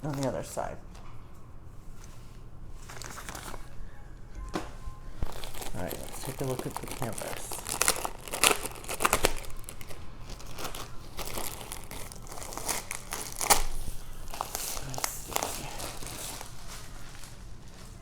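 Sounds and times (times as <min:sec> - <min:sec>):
plastic packaging crinkling: 0:02.8 - 0:03.9, 0:05.0 - 0:18.0.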